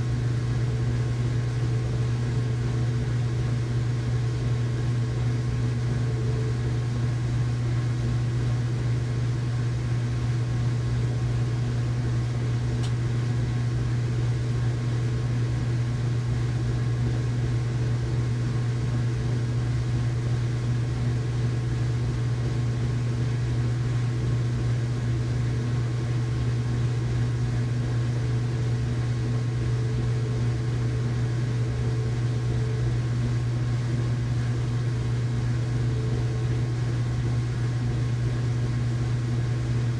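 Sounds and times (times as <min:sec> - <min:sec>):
washing machine motor hum: 0:00.0 - 0:39.9
faint click: 0:12.8 - 0:13.0.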